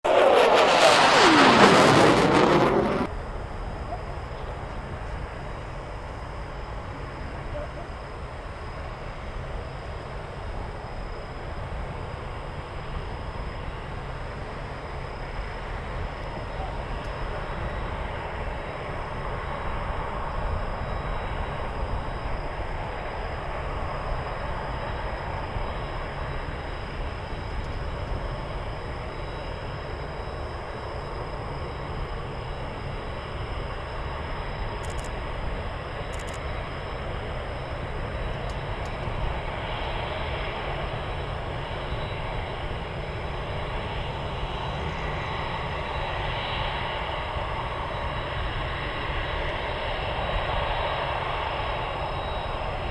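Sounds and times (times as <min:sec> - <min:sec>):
jet engine rushing: 0:00.0 - 0:07.5.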